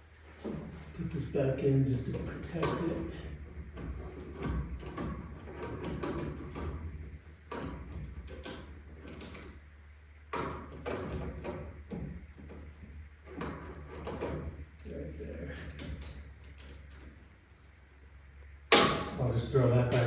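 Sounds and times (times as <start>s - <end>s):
steady low hum: 0.0s - 20.0s
small parts clicking and knocking: 2.0s - 9.7s, 10.3s - 17.8s.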